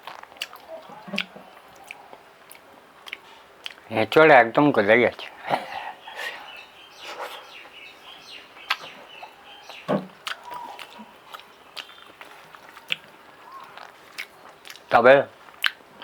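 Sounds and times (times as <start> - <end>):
person chewing and lip smacking: 0.0 - 3.9, 8.6 - 16.0
faint birds chirping: 0.0 - 16.0.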